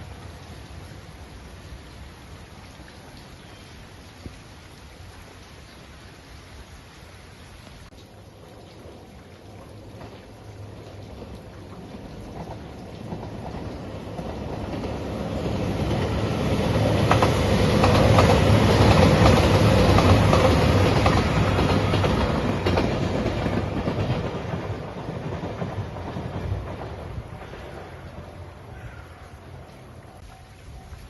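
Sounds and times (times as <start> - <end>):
train passing: 8.1 - 30.2
wheels clacking over rail joints: 9.5 - 28.6.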